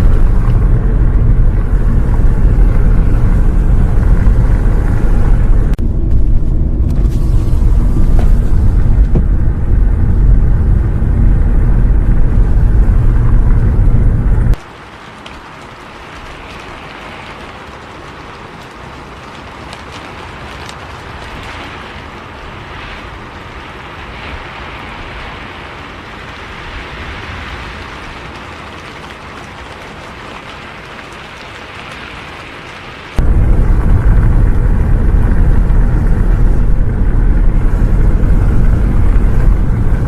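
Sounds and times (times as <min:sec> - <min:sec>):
low vehicle rumble: 0:00.0 - 0:14.6, 0:33.2 - 0:40.0
raindrop ticks: 0:00.0 - 0:40.0
steady rain: 0:00.0 - 0:40.0.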